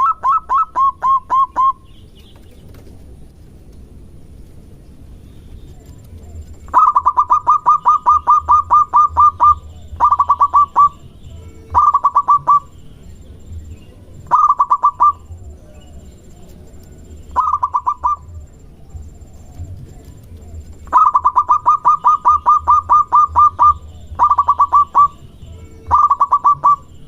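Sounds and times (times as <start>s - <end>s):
dove cooing in staccato bursts: 0.0s - 1.8s, 6.6s - 12.8s, 13.6s - 27.0s.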